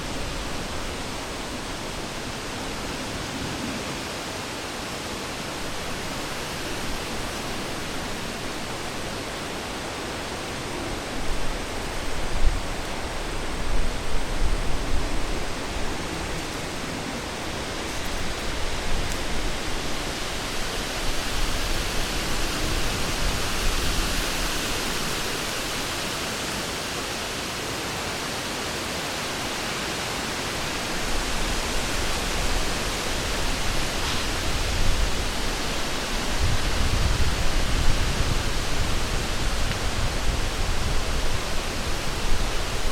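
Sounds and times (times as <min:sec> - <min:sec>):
wind through trees: 0:00.0 - 0:42.9
low wind buffeting rumbles: 0:05.5 - 0:25.9, 0:30.9 - 0:42.9.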